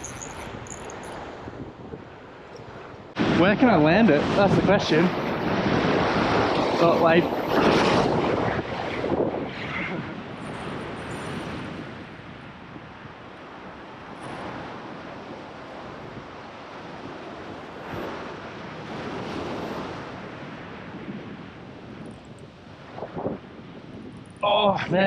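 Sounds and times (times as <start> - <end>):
wind buffeting microphone: 0.0 - 25.0
ocean surf washing on rocks: 3.1 - 9.3, 10.6 - 24.0.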